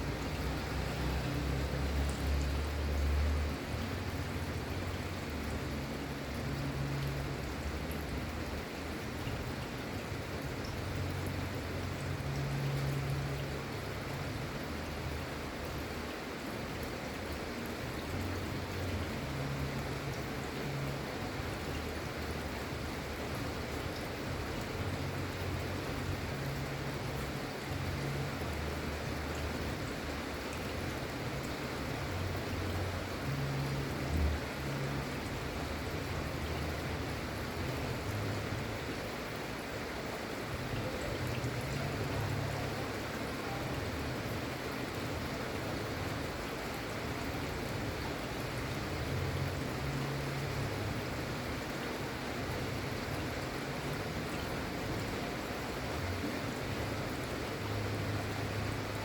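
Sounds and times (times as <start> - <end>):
gentle rain falling: 0.0 - 59.0.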